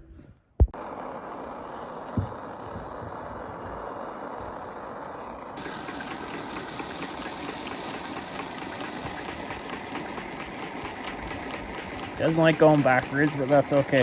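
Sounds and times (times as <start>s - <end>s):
steam engine chuffing: 5.6s - 14.0s
steam hiss: 5.6s - 14.0s.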